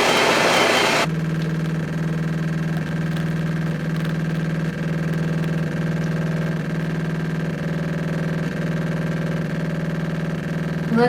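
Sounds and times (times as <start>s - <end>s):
espresso machine pump humming: 0.0s - 1.1s.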